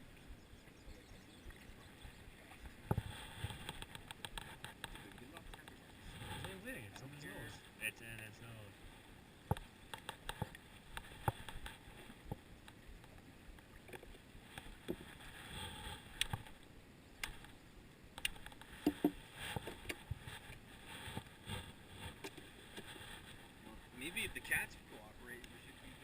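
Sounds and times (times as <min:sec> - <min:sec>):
fishing gear clicks and knocks: 0:02.9 - 0:06.6, 0:09.5 - 0:15.1, 0:18.2 - 0:21.3.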